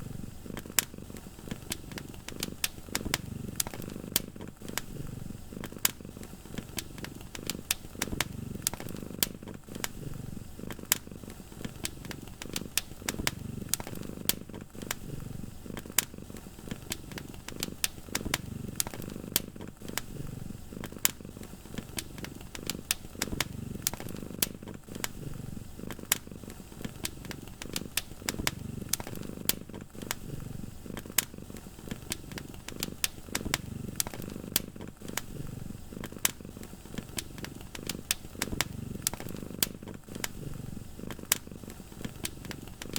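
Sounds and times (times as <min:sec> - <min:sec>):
cat purring: 0:00.0 - 0:42.9
wood fire crackling and popping: 0:00.3 - 0:42.9.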